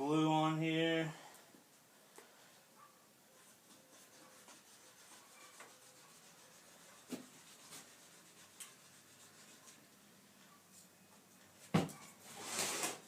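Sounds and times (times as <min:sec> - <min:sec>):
glue rubbing and scraping on wood: 0:03.4 - 0:09.9.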